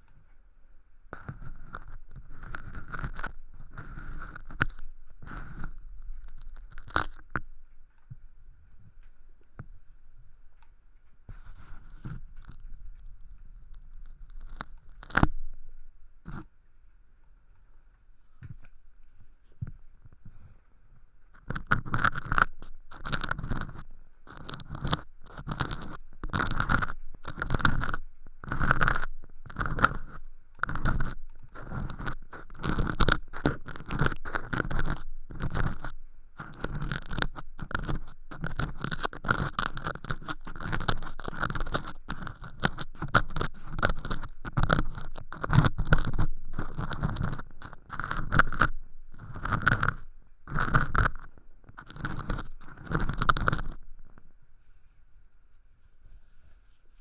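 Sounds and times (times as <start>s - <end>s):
earpick scraping crispy flakes: 1.2s - 7.4s, 21.4s - 54.3s.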